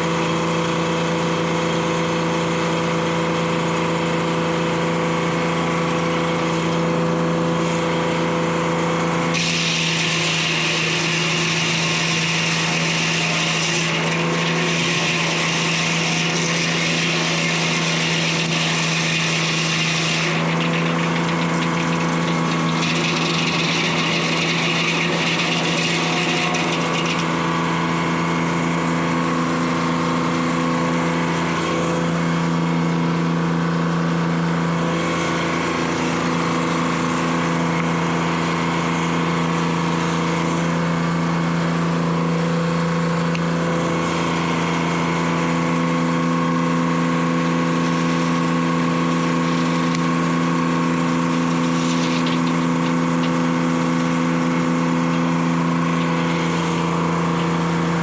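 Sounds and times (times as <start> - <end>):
saw blade cutting log: 9.2 - 32.4, 42.6 - 58.0
diesel engine running: 13.4 - 58.0.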